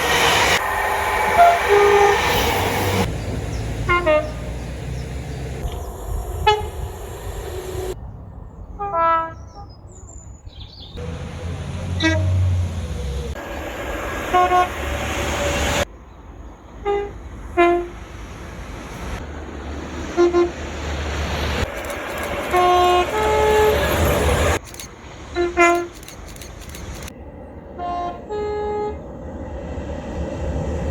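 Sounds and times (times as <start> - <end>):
train horn toots: 0.0 - 3.1, 3.8 - 4.6, 6.2 - 8.0, 8.8 - 9.6, 11.0 - 12.8, 14.1 - 15.8, 16.8 - 18.0, 20.0 - 21.0, 21.8 - 24.6, 25.3 - 26.2, 27.8 - 29.1
low engine rumble: 0.0 - 9.1, 11.0 - 15.9
low locomotive rumble: 0.0 - 10.3, 10.9 - 30.9
bird chirping: 9.4 - 11.0.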